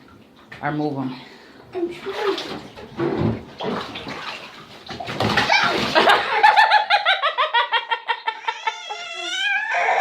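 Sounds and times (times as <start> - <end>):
splashing in bathwater: 1.8 - 6.7
person laughing: 6.0 - 9.2.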